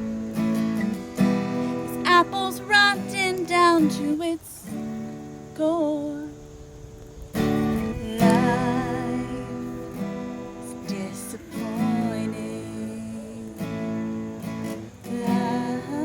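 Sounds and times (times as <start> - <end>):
strummed acoustic string chords: 7.4 - 16.0.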